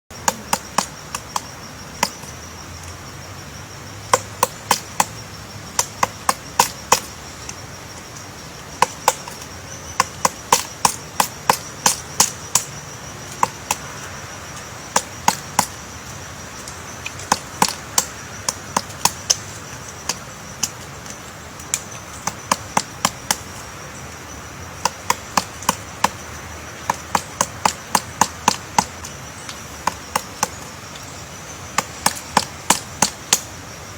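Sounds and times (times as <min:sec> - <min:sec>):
woodpecker pecking wood: 0:00.1 - 0:02.4, 0:04.1 - 0:24.0, 0:24.6 - 0:33.6.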